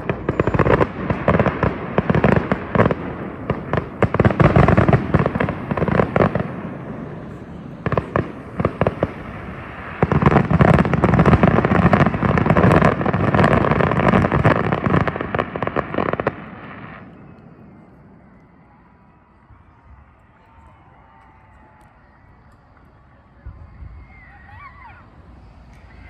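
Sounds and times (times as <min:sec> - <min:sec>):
fireworks bangs and crackling: 0:00.0 - 0:26.0.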